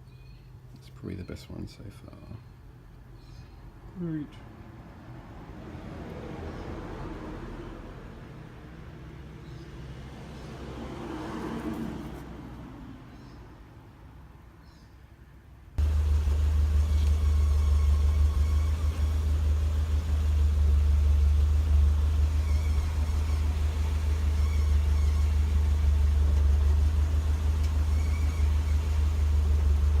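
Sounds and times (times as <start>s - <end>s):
car engine idling: 15.8s - 30.0s.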